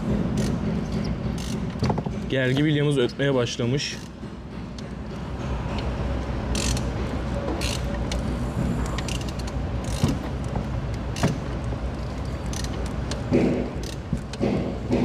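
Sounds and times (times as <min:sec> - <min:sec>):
engine clicks and knocks: 0:00.0 - 0:15.0
diesel engine running: 0:04.2 - 0:15.0.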